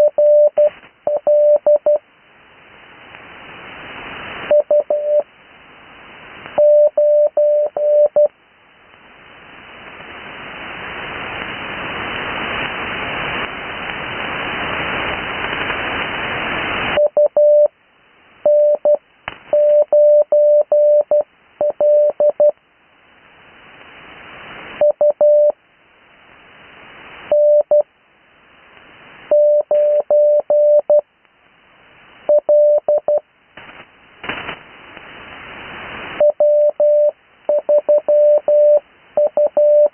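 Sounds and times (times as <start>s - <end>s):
morse code beeps: 0.0s - 2.0s, 4.5s - 5.2s, 6.6s - 8.3s, 17.0s - 17.7s, 18.4s - 22.5s, 24.8s - 25.6s, 27.3s - 27.9s, 29.3s - 31.0s, 32.3s - 33.2s, 36.2s - 39.9s
radio band hiss: 0.0s - 2.0s, 8.9s - 17.7s, 33.5s - 39.3s.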